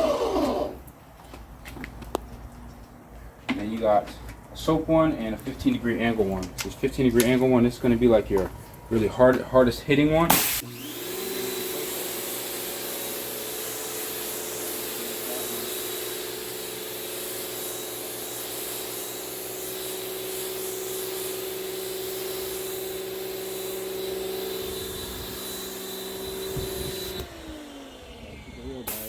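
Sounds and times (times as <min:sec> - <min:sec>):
pressure washer motor hum: 0:00.0 - 0:00.8, 0:10.3 - 0:29.0
water jet hissing: 0:10.3 - 0:10.8.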